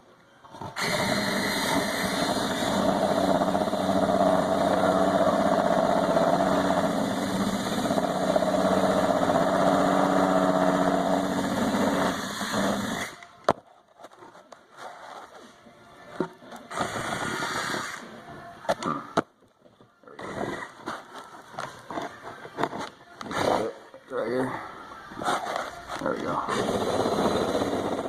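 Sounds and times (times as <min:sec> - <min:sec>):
cordless drill running: 0:00.8 - 0:13.2, 0:26.5 - 0:28.0.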